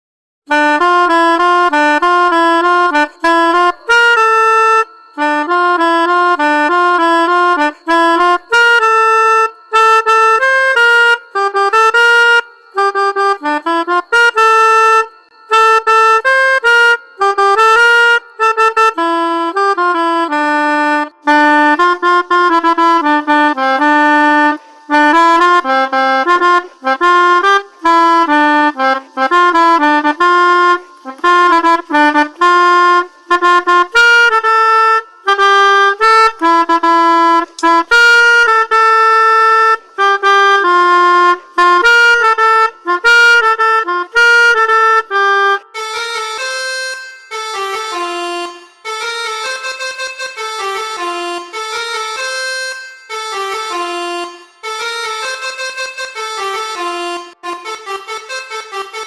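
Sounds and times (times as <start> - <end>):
melodica playing a tune: 0.5 - 59.0.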